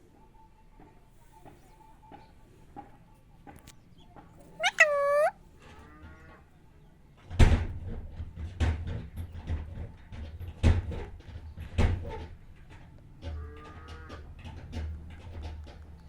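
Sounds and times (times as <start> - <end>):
sharp knocks and clatters: 7.3 - 16.0.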